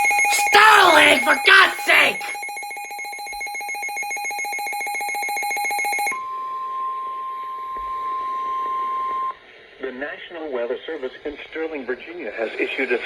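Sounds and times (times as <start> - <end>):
rapid trilling electronic alarm beep: 2.4 - 6.2.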